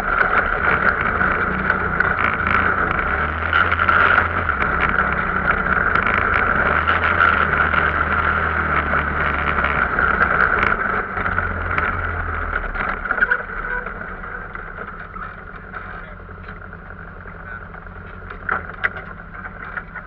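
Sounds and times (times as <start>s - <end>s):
small knocks and rattles: 0.0s - 20.0s
vehicle engine droning: 0.0s - 20.0s.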